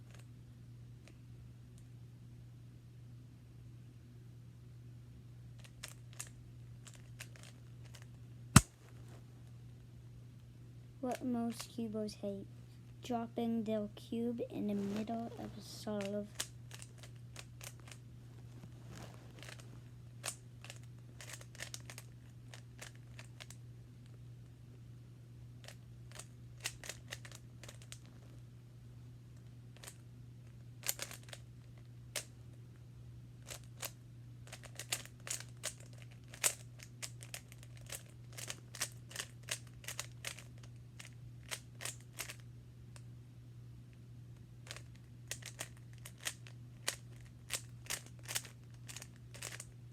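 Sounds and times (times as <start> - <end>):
steady low hum: 0.0 - 49.9
plastic cube layers clicking: 44.7 - 49.7.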